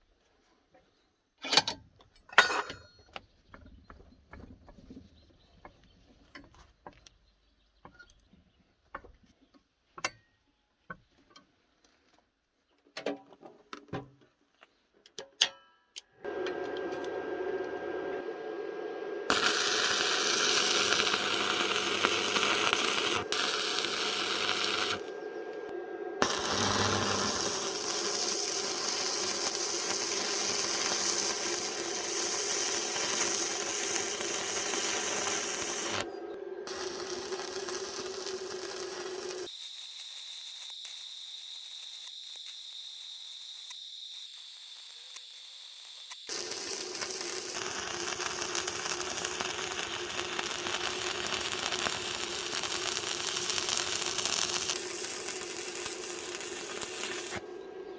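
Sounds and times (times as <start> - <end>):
thin high whine: 16.2 - 45.2, 46.3 - 57.9
power tool scouring metal: 26.2 - 36.1.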